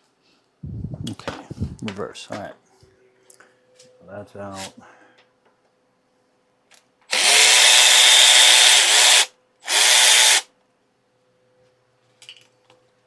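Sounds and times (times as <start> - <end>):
cordless power driver running: 7.1 - 10.4.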